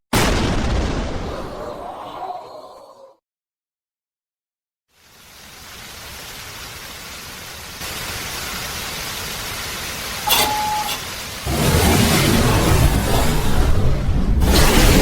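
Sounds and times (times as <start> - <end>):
brief beep-like tone: 10.2 - 11.1.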